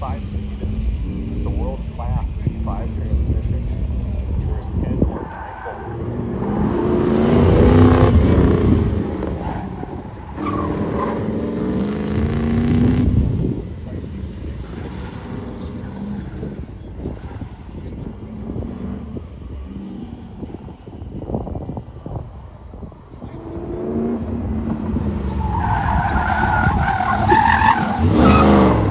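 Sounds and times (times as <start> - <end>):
car engine accelerating: 0.0 - 28.9.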